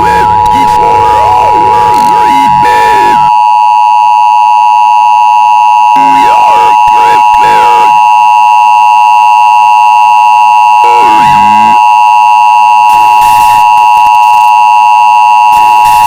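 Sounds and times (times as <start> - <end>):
two-tone attention signal: 0.0 - 3.5, 5.8 - 8.2, 10.6 - 13.7.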